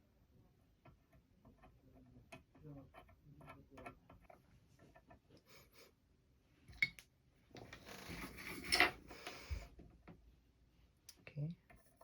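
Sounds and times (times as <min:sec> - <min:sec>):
rustling scrape: 0:07.8 - 0:09.5.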